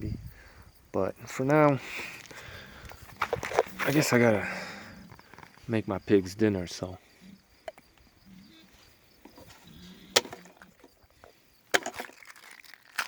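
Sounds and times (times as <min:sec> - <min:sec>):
sharp knocks: 0:10.2 - 0:10.6.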